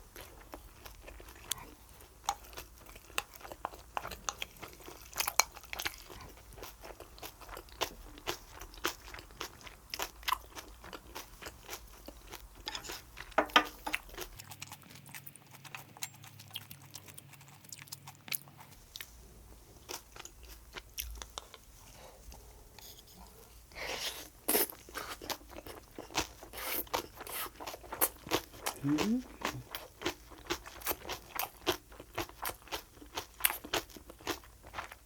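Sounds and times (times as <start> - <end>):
person chewing crunchy food: 0.0 - 35.0.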